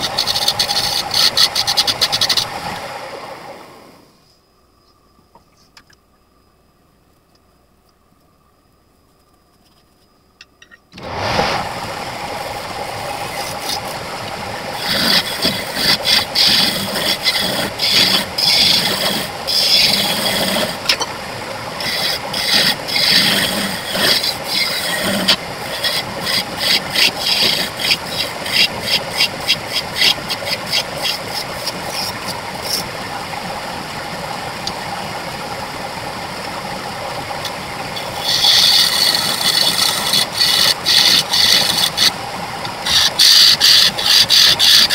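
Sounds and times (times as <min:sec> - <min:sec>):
turning tool scraping wood: 0:00.0 - 0:02.9, 0:11.0 - 0:21.2, 0:21.8 - 0:33.2, 0:37.4 - 0:44.9
wood lathe running: 0:00.0 - 0:03.9, 0:11.0 - 0:44.9.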